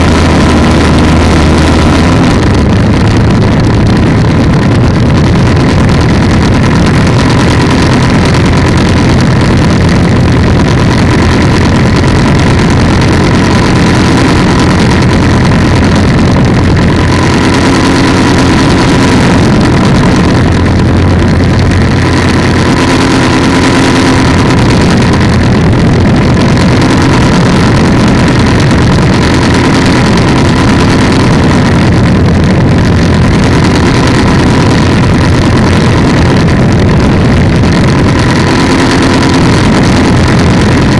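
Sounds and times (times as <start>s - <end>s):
two-stroke engine drone: 0.0s - 40.9s.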